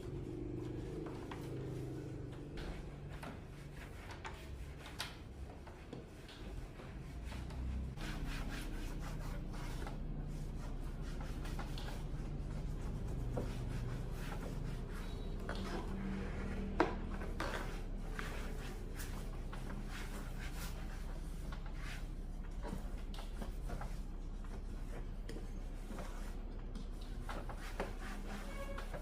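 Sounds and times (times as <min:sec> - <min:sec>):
steady low hum: 0:06.8 - 0:28.7.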